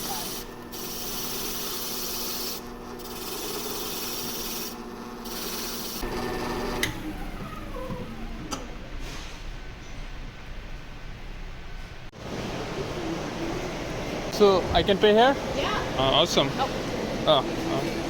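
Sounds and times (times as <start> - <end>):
key rasping on sanding wheel: 0.0 - 6.0.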